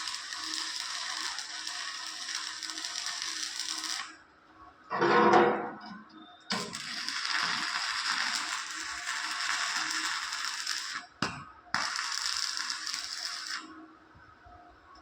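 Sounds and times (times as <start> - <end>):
arc welding crackling and hissing: 0.0 - 4.2, 6.5 - 13.8.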